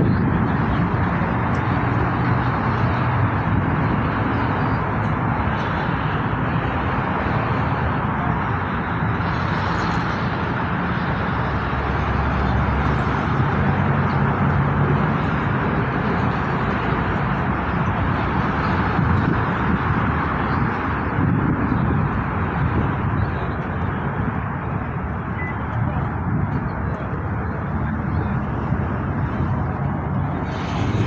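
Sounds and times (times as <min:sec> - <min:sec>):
train engine hum: 0:21.8 - 0:31.0.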